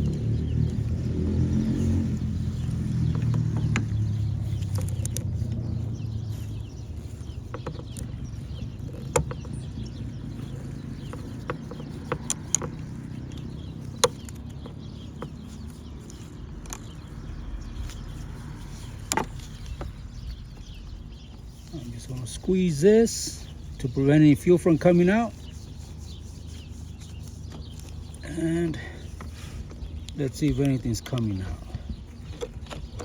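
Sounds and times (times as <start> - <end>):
small tools clicking and tapping: 2.6 - 5.6, 7.2 - 20.0
steady low hum: 13.0 - 32.2.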